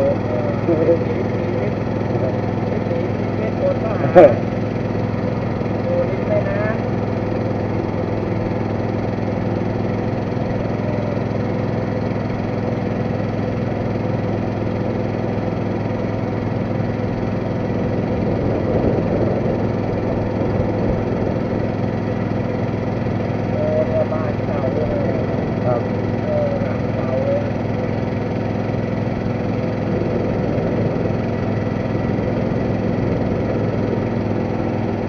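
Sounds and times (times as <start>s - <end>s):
boat engine running: 0.0s - 35.0s.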